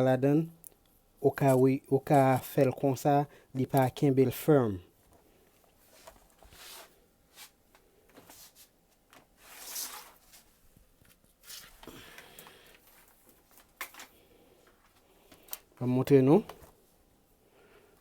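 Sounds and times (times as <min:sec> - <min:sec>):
laptop handling rustles: 0:05.0 - 0:16.9.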